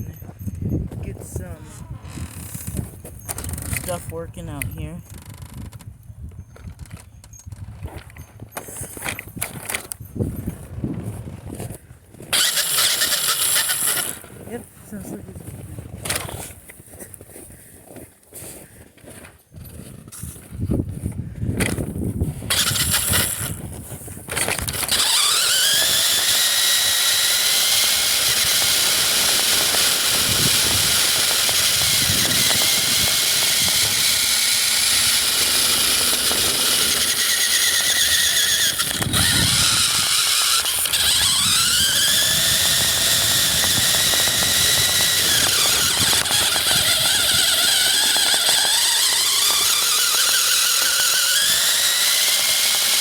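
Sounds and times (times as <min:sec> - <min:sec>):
electric toy car motor whining: 0:01.2 - 0:04.1, 0:12.3 - 0:14.5, 0:16.0 - 0:16.6, 0:22.4 - 0:53.0.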